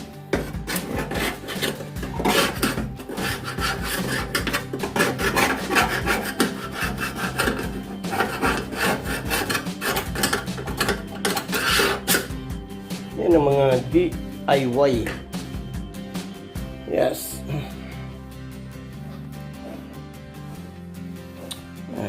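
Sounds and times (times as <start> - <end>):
hand scraping on metal: 0.2 - 12.4.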